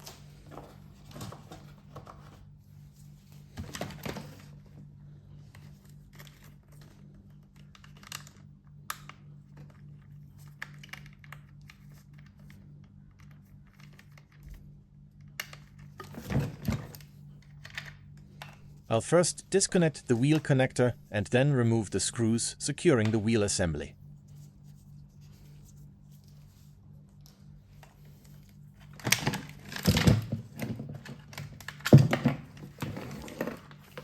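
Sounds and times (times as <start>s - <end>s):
steady low hum: 0.0s - 34.0s
plastic parts clicking and rattling: 5.6s - 14.6s, 27.8s - 34.0s.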